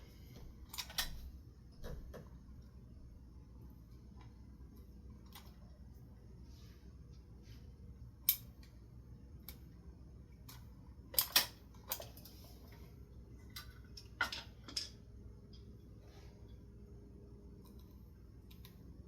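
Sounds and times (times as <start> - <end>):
small metal parts clicking: 10.5 - 12.3.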